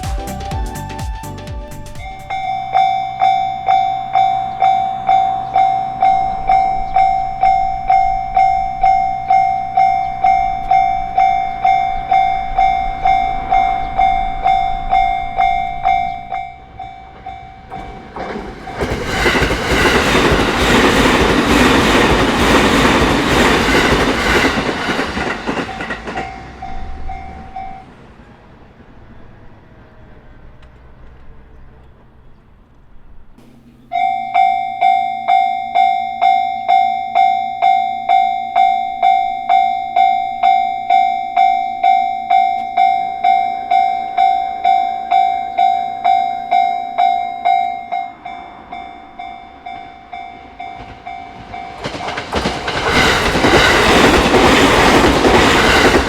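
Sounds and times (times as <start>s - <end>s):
railway crossing warning bell: 2.0s - 28.0s, 33.4s - 56.0s
train wheels clattering over rail joints: 16.8s - 27.8s, 50.2s - 56.0s.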